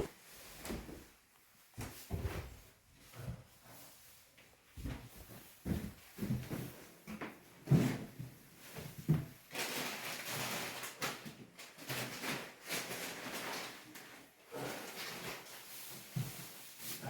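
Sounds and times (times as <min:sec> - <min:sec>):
rustling and scuffing: 0:15.2 - 0:17.0.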